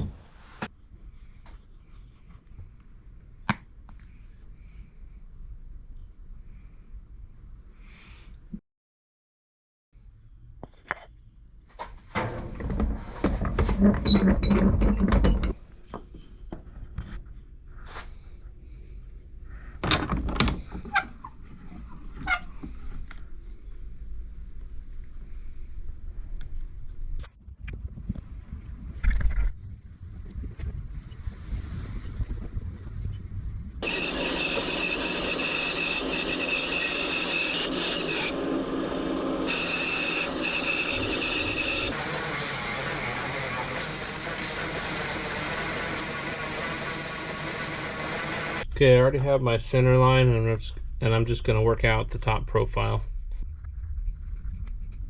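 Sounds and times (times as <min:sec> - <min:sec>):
power tool whining on wood: 0:33.8 - 0:48.6.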